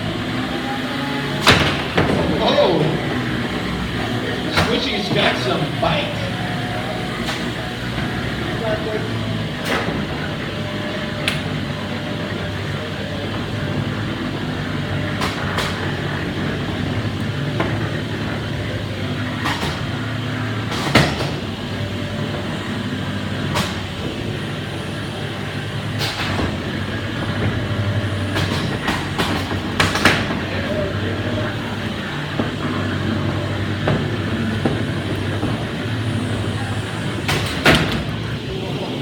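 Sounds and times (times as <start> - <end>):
electric motor hum: 0.0 - 20.7.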